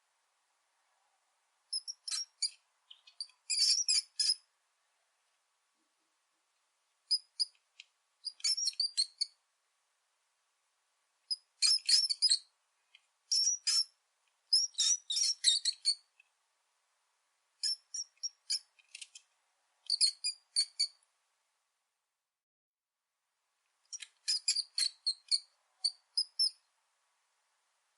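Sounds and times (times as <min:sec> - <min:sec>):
rat squeaking: 0:01.7 - 0:04.5, 0:07.1 - 0:07.6, 0:08.2 - 0:09.4, 0:11.3 - 0:12.5, 0:13.3 - 0:16.1, 0:17.6 - 0:19.2, 0:19.9 - 0:21.0, 0:23.9 - 0:26.6.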